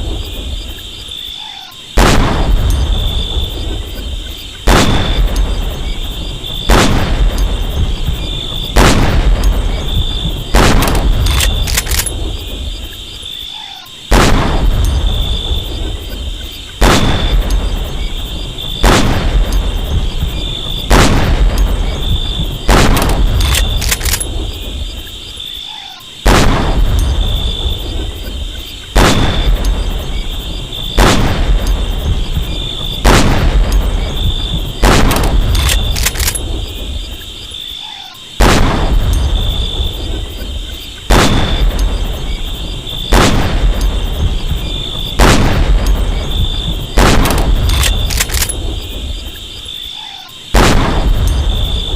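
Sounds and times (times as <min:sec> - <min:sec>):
rifle shots echoing: 0:02.0 - 0:03.7, 0:04.6 - 0:12.7, 0:14.1 - 0:15.4, 0:16.8 - 0:18.0, 0:18.7 - 0:24.8, 0:26.2 - 0:27.2, 0:28.9 - 0:30.2, 0:30.9 - 0:36.9, 0:38.4 - 0:40.2, 0:41.1 - 0:42.3, 0:43.0 - 0:44.3, 0:45.0 - 0:49.1, 0:50.5 - 0:51.5.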